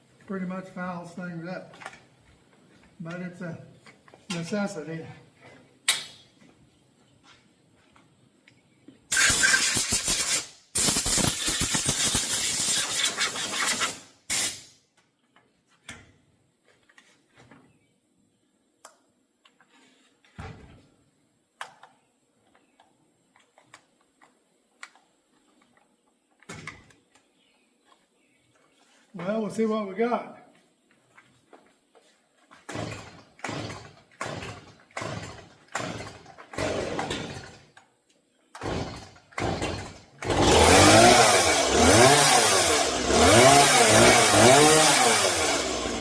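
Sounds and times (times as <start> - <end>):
pressurised spray hissing: 9.1 - 14.7.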